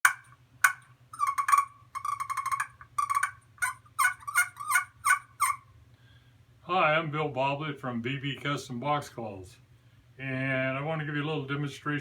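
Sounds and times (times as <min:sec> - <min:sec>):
turkey call clucks and purrs: 0:00.0 - 0:05.8.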